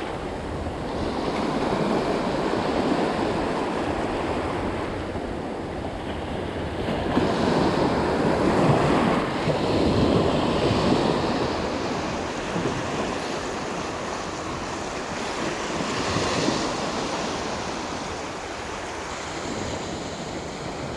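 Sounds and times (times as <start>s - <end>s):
sea waves breaking: 0.0s - 20.9s
wind buffeting microphone: 0.0s - 20.9s.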